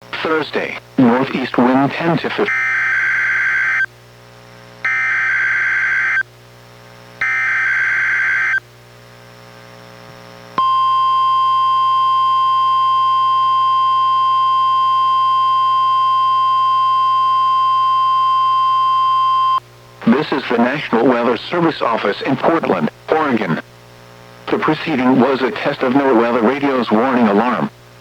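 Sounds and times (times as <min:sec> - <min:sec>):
steady warning alarm tone: 0:02.5 - 0:03.9, 0:04.9 - 0:06.2, 0:07.2 - 0:08.6, 0:10.6 - 0:19.6
shrill data tone bursts: 0:10.6 - 0:19.6.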